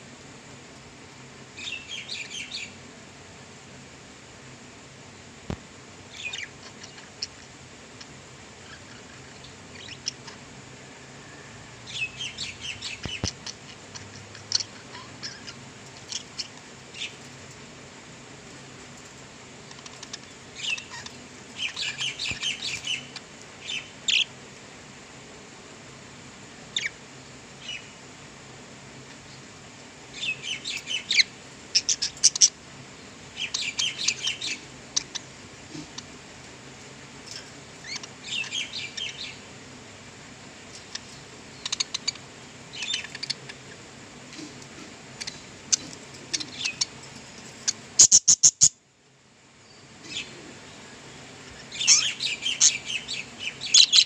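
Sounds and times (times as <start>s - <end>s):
budgerigars chirping and chattering: 8.6s - 10.4s, 12.0s - 17.2s, 19.7s - 24.3s, 30.2s - 32.6s, 33.4s - 36.1s, 40.8s - 42.2s, 42.8s - 43.8s, 44.4s - 47.0s, 47.6s - 48.7s, 51.4s - 54.0s.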